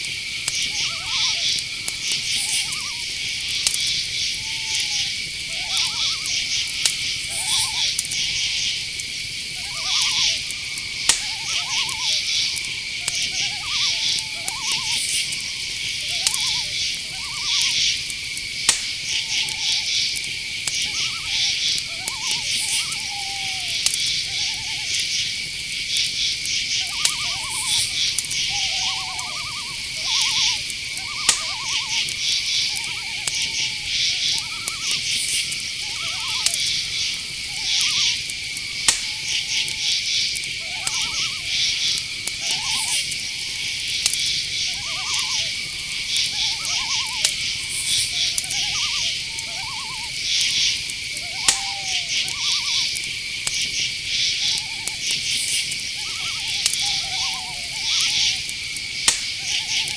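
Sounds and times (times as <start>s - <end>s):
short trilled calls: 0.0s - 8.8s, 9.5s - 25.4s, 26.0s - 58.5s
crickets chirping: 0.0s - 59.9s
high insect drone: 0.0s - 59.9s
sharp clicks: 17.6s - 19.5s, 26.0s - 49.3s, 58.4s - 59.4s.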